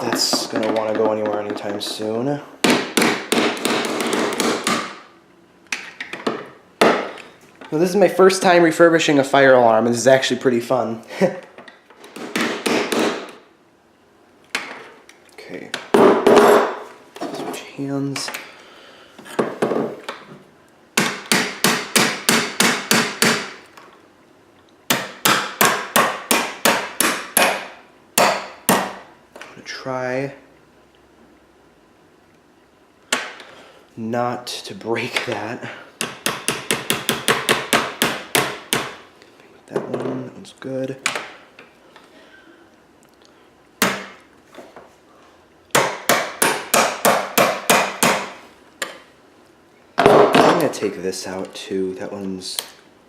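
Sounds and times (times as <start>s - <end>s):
hammer strikes: 2.6s - 5.1s, 12.2s - 13.4s, 21.0s - 23.6s, 24.9s - 29.0s, 36.0s - 39.0s, 45.7s - 48.4s.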